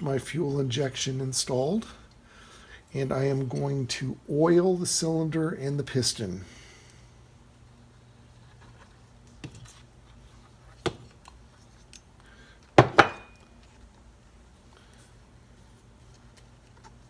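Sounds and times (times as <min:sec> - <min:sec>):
hard objects set on a workbench: 0:12.8 - 0:13.4.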